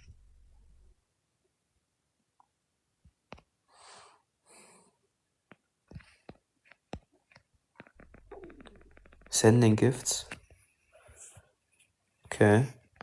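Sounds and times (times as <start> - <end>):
soft breaths: 3.6 - 5.2, 10.1 - 12.0
faint clicks and pops: 5.5 - 9.4.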